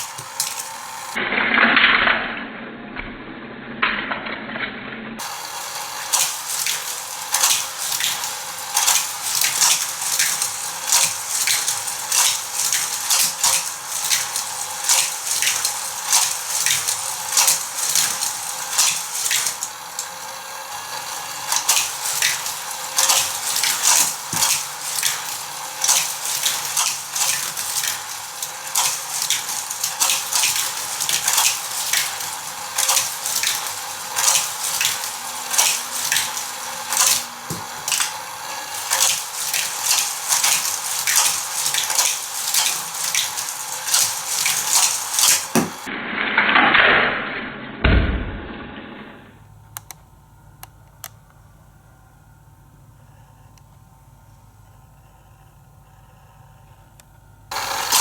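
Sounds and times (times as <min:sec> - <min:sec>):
toy cars and track clattering: 0:00.0 - 0:02.0, 0:05.2 - 0:45.9, 0:57.5 - 0:58.0.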